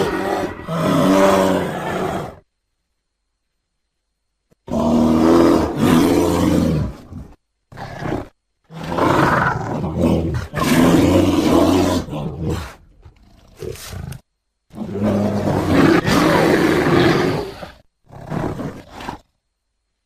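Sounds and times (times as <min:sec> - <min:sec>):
bear roaring growls: 0:00.0 - 0:02.4, 0:04.6 - 0:19.2.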